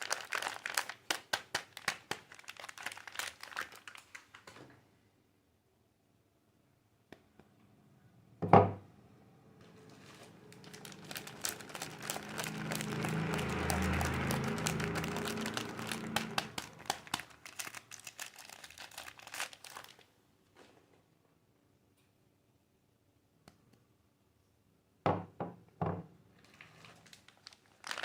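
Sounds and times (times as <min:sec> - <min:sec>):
wrapper crinkling: 0:00.0 - 0:04.6, 0:09.9 - 0:20.1, 0:26.4 - 0:28.0.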